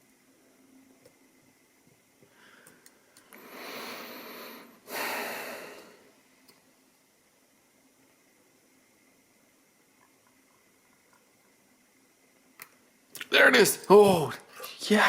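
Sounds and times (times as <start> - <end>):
person breathing: 2.3 - 6.1.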